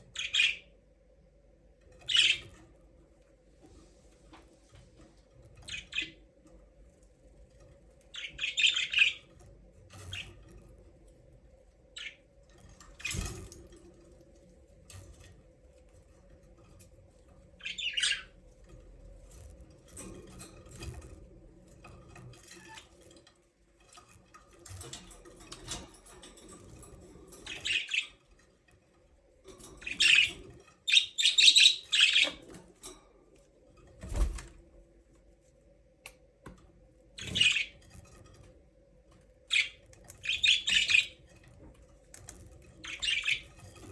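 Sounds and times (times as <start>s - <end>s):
faint steady hum: 0.0s - 43.9s
budgerigars chirping: 0.2s - 0.6s, 8.2s - 9.3s, 17.6s - 18.3s, 27.5s - 28.2s, 29.8s - 32.4s, 37.2s - 37.8s, 39.5s - 41.2s, 42.8s - 43.5s.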